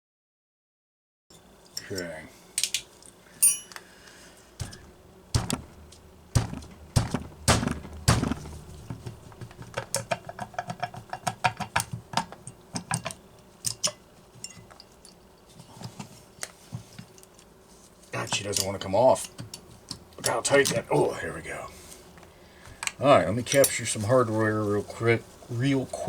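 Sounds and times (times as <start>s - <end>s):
metal tools clinking and knocking: 3.4s - 3.8s, 23.5s - 23.8s.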